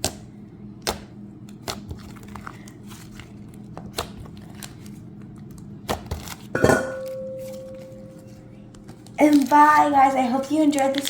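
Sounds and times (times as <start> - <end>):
slime squishing with sticky clicks: 0.0 - 2.5.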